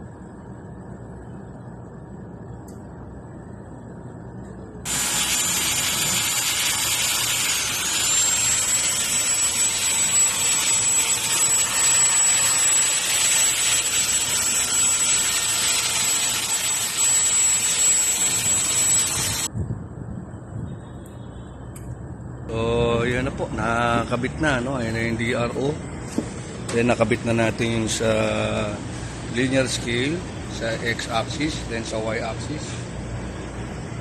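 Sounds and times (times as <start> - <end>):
high-speed tool whining: 4.9 - 19.5.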